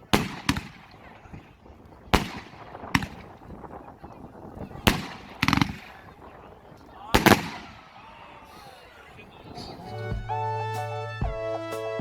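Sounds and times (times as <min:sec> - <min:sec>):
rattle of firework cracks: 0:00.0 - 0:08.8
fireworks shells bursting: 0:00.0 - 0:10.2.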